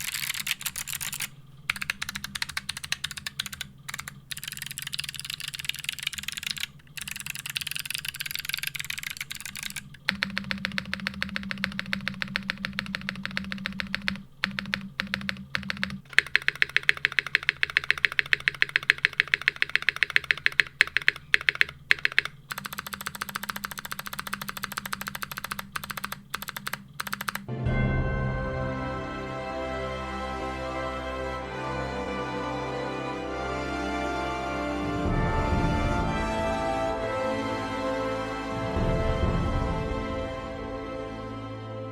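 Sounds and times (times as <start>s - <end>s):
mechanical keyboard keys clacking: 0.0s - 27.5s
spacebars pressed rapidly: 0.0s - 27.5s
music: 27.5s - 41.9s.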